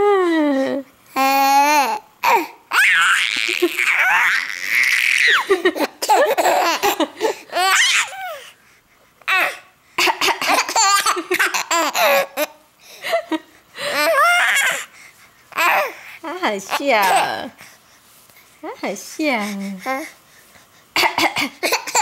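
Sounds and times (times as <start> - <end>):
baby laughing: 1.2 - 8.4, 9.3 - 12.6, 21.0 - 22.0
person coughing: 10.0 - 10.8, 21.0 - 22.0.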